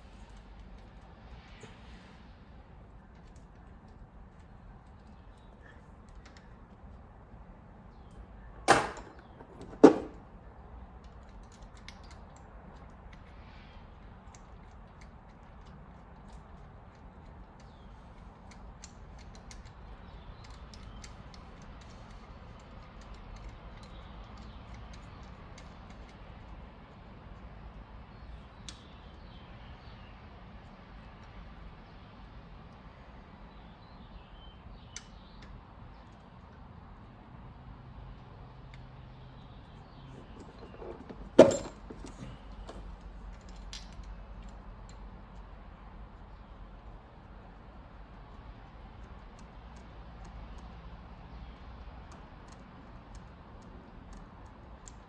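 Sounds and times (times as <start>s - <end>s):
metal clank: 8.7s - 10.2s, 40.2s - 42.8s
metal parts clicking: 8.7s - 10.2s, 40.2s - 43.9s.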